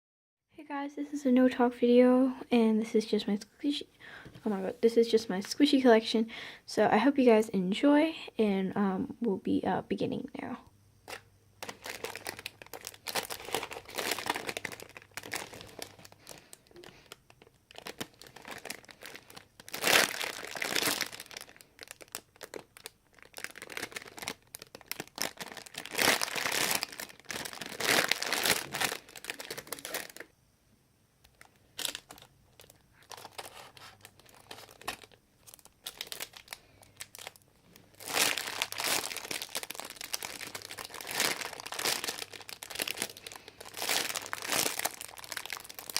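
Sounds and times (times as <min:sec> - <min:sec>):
plastic crinkling and rustling: 0:11.1 - 0:30.3, 0:31.2 - 0:45.9.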